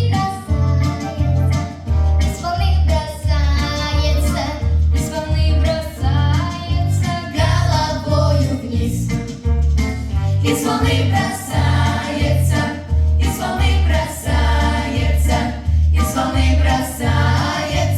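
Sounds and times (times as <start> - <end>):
pulsing bass beat: 0.0 - 17.9
children singing: 10.4 - 17.9.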